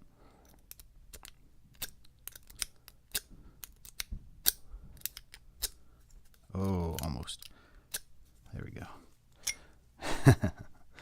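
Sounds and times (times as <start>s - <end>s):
lock pick clicking in padlock: 0.4s - 5.8s.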